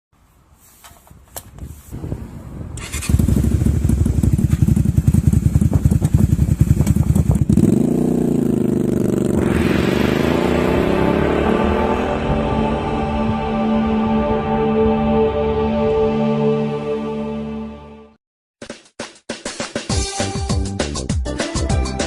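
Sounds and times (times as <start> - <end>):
motorcycle engine idling: 3.0 - 9.2
music with gliding tones: 10.4 - 18.2.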